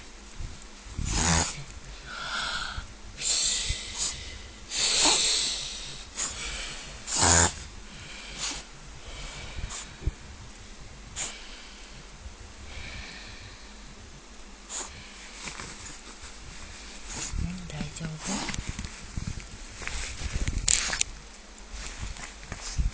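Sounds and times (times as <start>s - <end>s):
dog reverse sneezing: 4.8s - 5.4s, 14.7s - 14.9s.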